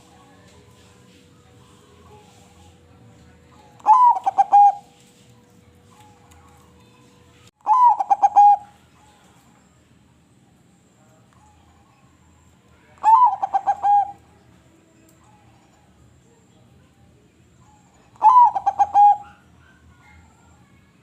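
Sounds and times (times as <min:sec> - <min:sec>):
dove cooing: 0:03.5 - 0:04.9, 0:07.6 - 0:09.2, 0:13.0 - 0:14.4, 0:17.6 - 0:19.8.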